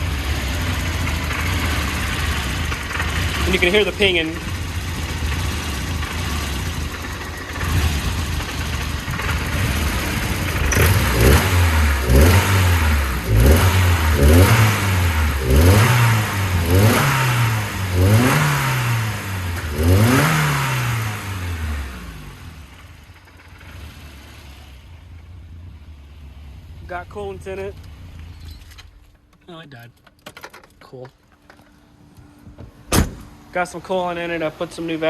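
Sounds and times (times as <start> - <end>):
engine pinging: 0.0 - 14.7
car engine idling and revving: 0.0 - 35.0.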